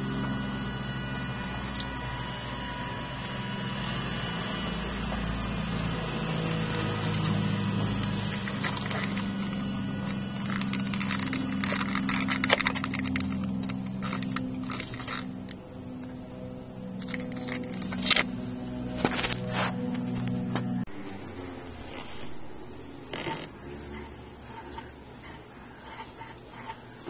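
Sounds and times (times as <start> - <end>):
throttle body whine: 0.0 - 27.0
throttle creaking: 5.1 - 20.8, 21.9 - 27.0.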